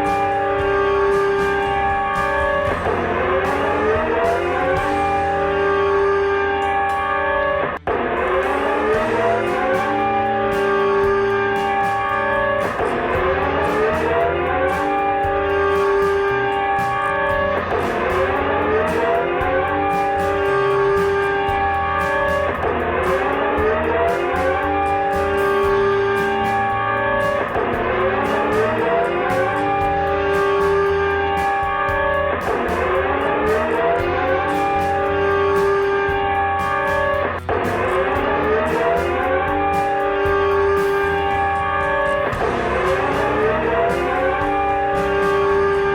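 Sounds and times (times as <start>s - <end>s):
distorted multi-tone alert: 0.0s - 45.9s
guitar chords ringing: 0.0s - 45.9s
ticking beat: 0.0s - 45.9s.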